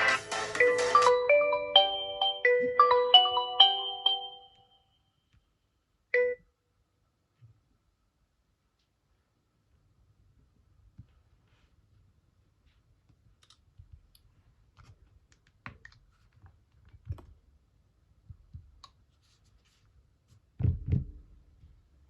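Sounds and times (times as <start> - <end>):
heavier knocks: 20.6 - 21.3.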